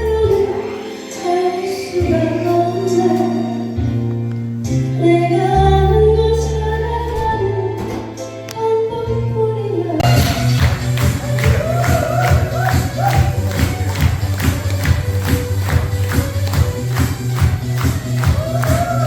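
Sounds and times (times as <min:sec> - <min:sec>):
woman singing: 0:00.0 - 0:03.8, 0:04.9 - 0:10.2
held bass notes: 0:09.2 - 0:19.0.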